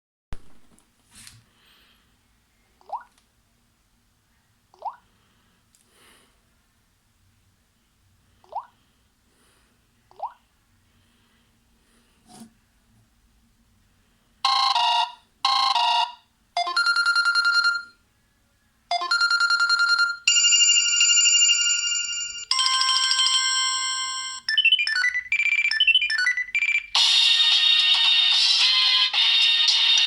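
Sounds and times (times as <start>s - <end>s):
phone ringtones: 14.5s - 18.0s, 18.9s - 30.0s.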